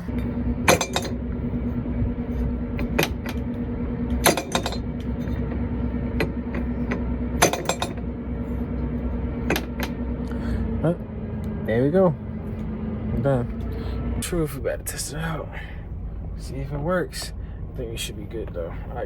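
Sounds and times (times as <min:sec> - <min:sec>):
metal tools clinking: 0:00.0 - 0:01.2, 0:04.1 - 0:05.5, 0:06.2 - 0:08.1, 0:09.5 - 0:10.0
steady low hum: 0:00.0 - 0:19.0.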